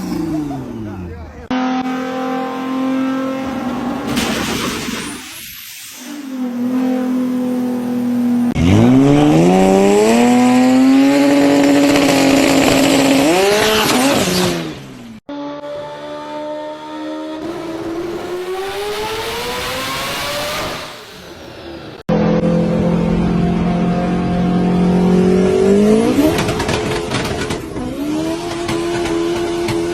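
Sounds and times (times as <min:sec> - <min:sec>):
car engine revving: 0:06.2 - 0:29.9
car engine accelerating: 0:06.4 - 0:29.9.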